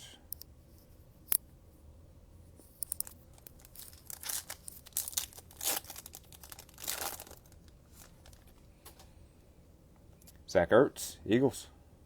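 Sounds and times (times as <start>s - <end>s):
foil wrapper tearing and crinkling: 2.9s - 8.6s.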